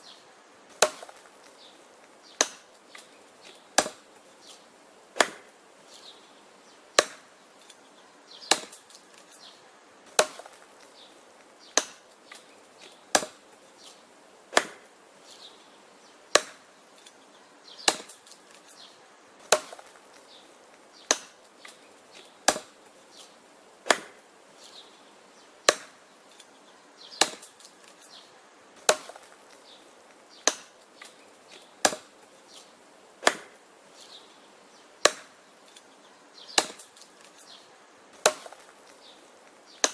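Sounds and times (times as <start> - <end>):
axe chopping wood: 0.7 - 1.7, 2.3 - 4.6, 5.2 - 5.5, 7.0 - 7.3, 8.4 - 9.3, 10.1 - 14.9, 16.3 - 16.7, 17.8 - 18.7, 19.4 - 24.2, 25.6 - 26.0, 27.1 - 28.0, 28.8 - 33.6, 35.0 - 35.8, 36.5 - 37.4, 38.2 - 39.9.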